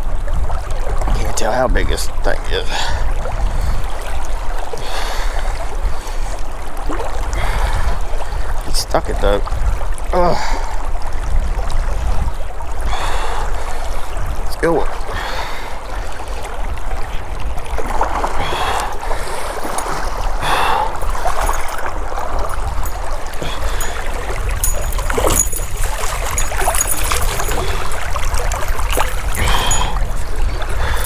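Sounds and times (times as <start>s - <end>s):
water splashes: 0.0s - 31.0s
river current rushing: 9.5s - 31.0s.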